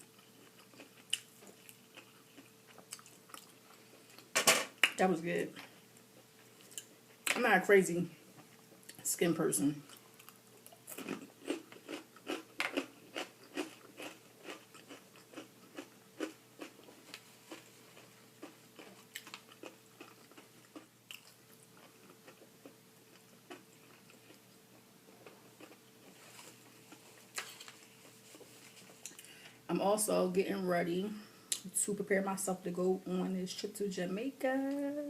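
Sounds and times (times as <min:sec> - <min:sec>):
person chewing crunchy food: 0:00.0 - 0:04.3, 0:09.9 - 0:29.3.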